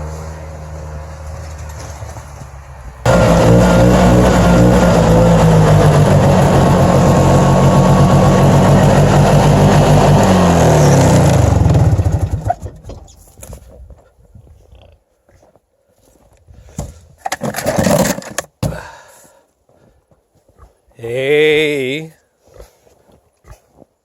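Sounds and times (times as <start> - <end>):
engine running and winding down: 3.1 - 12.8.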